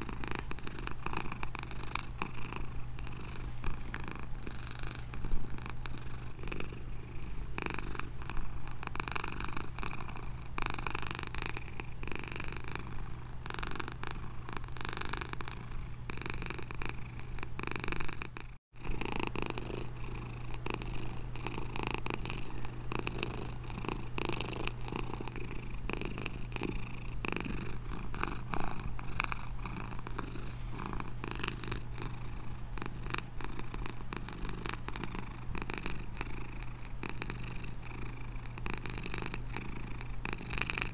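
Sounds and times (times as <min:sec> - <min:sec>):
cat purring: 0:00.0 - 0:40.9.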